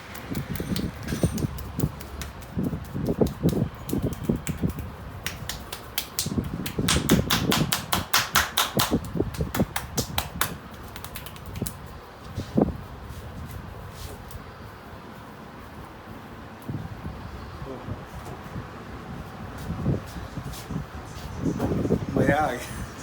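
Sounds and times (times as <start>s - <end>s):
hands slapping and clapping: 0.1s - 11.8s.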